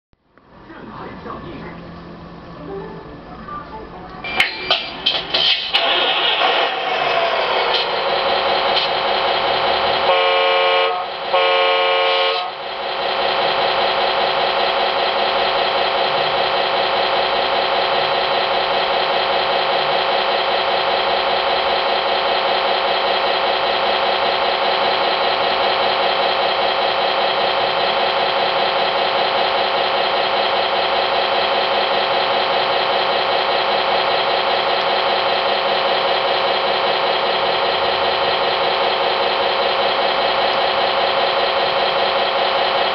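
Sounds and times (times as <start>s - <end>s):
simulated engine running: 0.5s - 42.9s
synthesized horn blasts: 10.0s - 12.6s.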